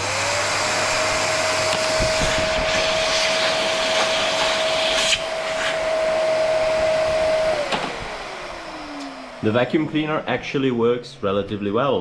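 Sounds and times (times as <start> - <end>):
vacuum cleaner whine: 0.0 - 11.8
click: 9.0 - 9.2.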